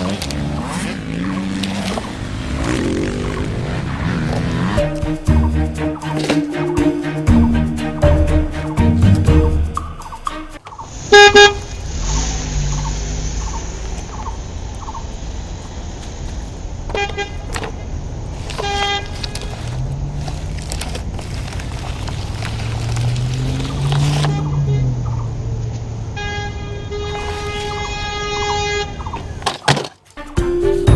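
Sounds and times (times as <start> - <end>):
motor vehicle hum: 0.0 - 30.1
background music: 4.0 - 10.7, 30.2 - 30.9
loud horn honks: 11.1 - 11.7, 26.0 - 29.3.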